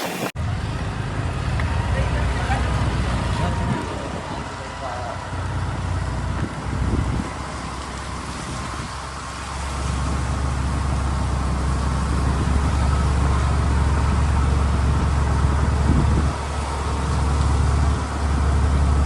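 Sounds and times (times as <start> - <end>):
vehicle engine and road noise: 0.0 - 19.0.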